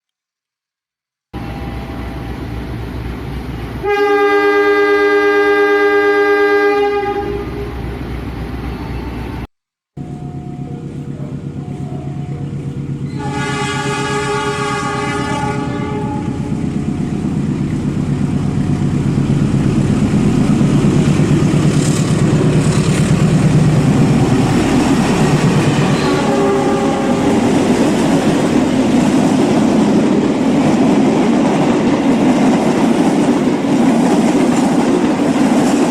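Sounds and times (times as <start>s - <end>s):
train rumbling on track: 1.4s - 9.4s, 10.0s - 35.9s
train horn blast: 3.8s - 7.8s, 13.1s - 16.6s, 24.4s - 28.0s.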